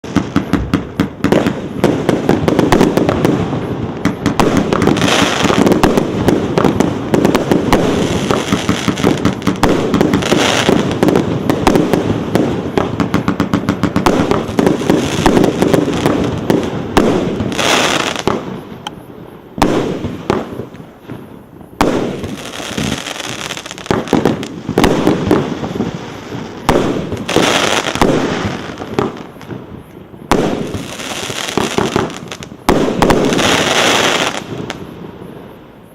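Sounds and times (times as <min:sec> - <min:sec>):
firework launches and bursts: 0:00.0 - 0:35.9.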